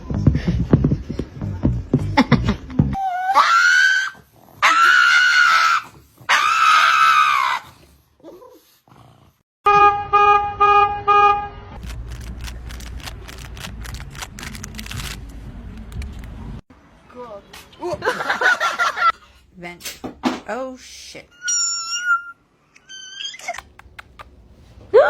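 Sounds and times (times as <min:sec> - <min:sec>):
animal high drawn-out cries: 0:03.0 - 0:07.7, 0:21.3 - 0:23.6
short horn-like beeps: 0:09.7 - 0:11.6.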